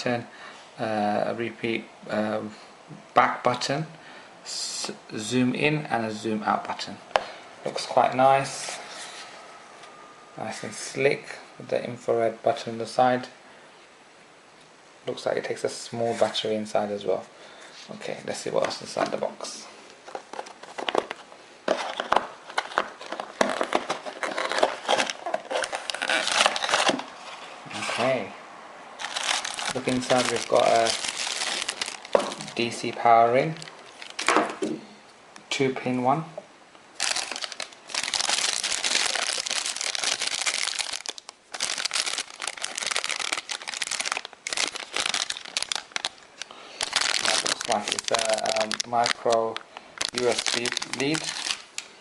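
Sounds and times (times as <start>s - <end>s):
plastic packaging crinkling: 20.0s - 28.1s, 29.0s - 34.6s, 37.0s - 52.0s
cardboard box rustling and crackling: 20.1s - 27.2s, 29.0s - 32.6s.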